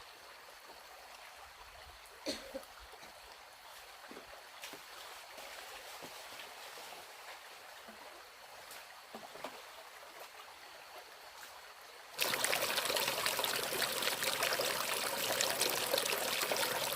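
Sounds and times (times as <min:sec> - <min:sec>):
running water: 0:00.7 - 0:16.9
loud rushing water: 0:12.2 - 0:16.9
water drips: 0:12.2 - 0:16.9.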